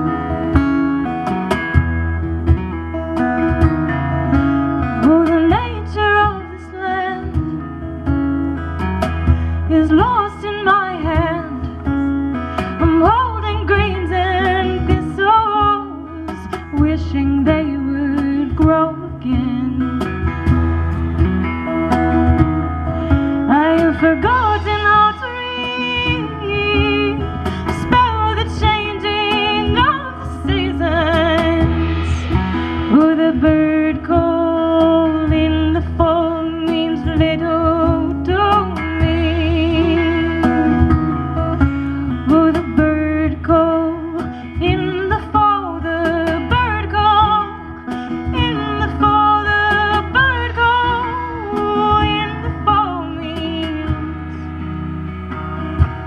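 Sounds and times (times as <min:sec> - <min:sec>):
plucked acoustic guitar: 0:00.0 - 0:56.0.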